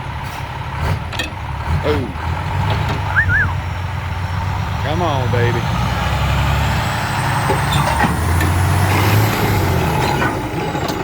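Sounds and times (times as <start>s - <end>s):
heavy truck engine pulling hard: 0.0s - 11.0s.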